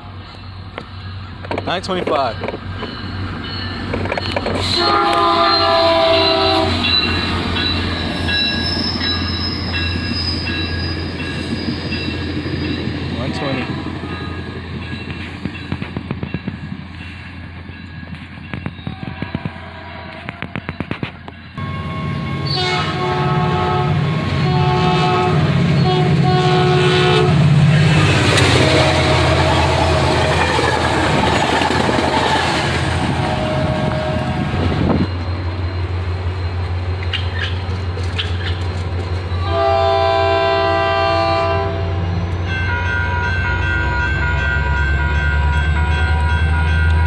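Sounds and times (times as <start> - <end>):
train rushing past: 0.0 - 47.0
train horn blasts: 4.6 - 7.1, 18.9 - 20.8, 21.6 - 35.1, 39.4 - 47.0.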